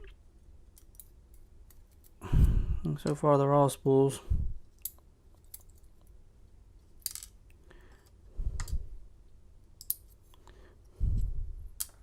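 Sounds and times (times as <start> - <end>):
small metal parts clinking: 0.7 - 2.2, 4.7 - 6.1, 6.9 - 8.8.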